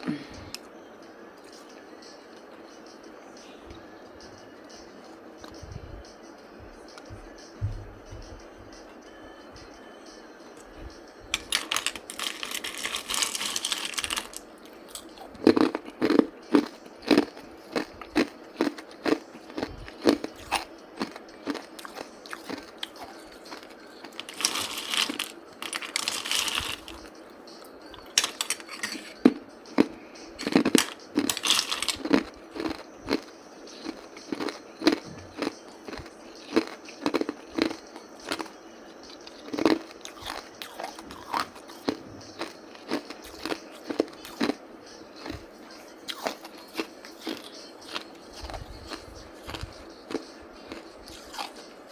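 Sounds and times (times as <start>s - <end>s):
person chewing hard ice: 11.3s - 27.1s, 27.9s - 44.6s, 45.2s - 45.5s, 46.1s - 51.6s.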